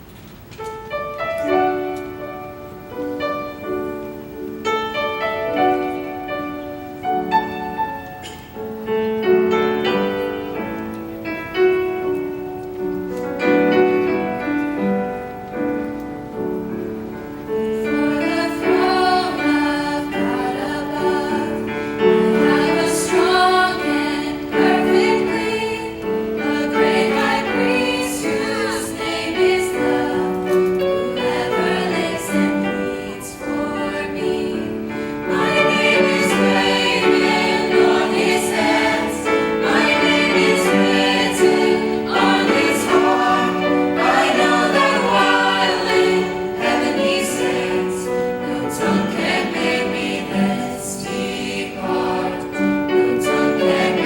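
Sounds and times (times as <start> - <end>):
church choir singing a hymn: 1.0 - 54.0.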